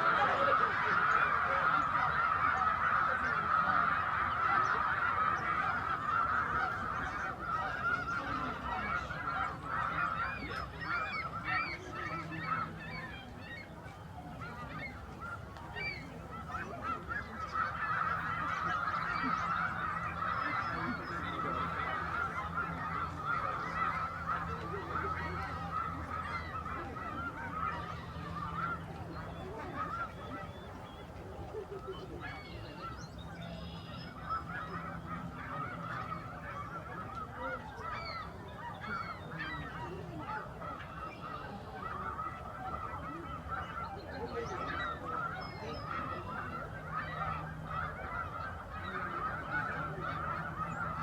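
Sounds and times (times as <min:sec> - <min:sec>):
geese honking: 0:00.0 - 0:51.0.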